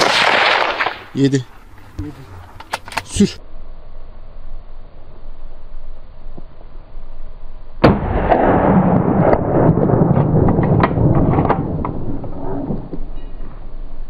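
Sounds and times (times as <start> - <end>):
rifle shot: 0.0 - 1.2, 7.8 - 12.9
rolling rumble: 0.0 - 3.4, 4.9 - 14.0.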